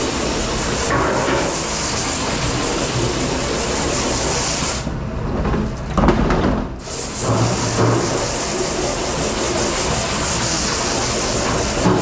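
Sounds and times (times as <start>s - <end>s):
water spray rushing: 0.0s - 4.9s, 6.8s - 12.0s.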